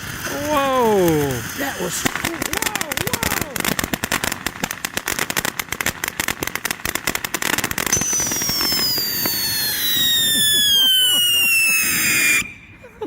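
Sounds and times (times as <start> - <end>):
firework crackling: 0.0 - 12.9
falling firework whistle: 7.8 - 12.8.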